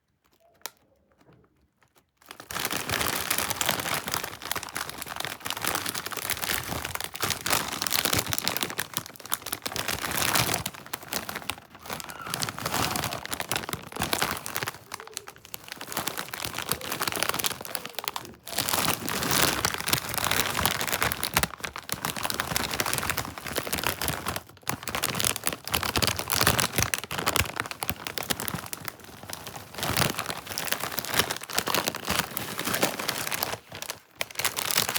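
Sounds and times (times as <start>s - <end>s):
plastic snack bag crinkling: 0.0s - 34.9s.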